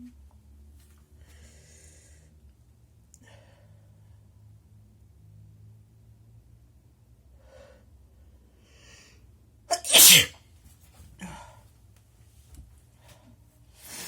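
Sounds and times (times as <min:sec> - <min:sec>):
faint breaths: 0:01.1 - 0:02.5
person sneezing: 0:09.7 - 0:10.3
sniff: 0:09.7 - 0:10.3.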